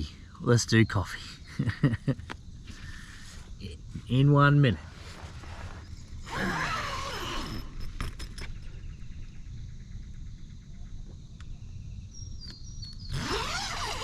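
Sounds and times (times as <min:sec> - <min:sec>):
faint insect trill: 0:00.0 - 0:14.0.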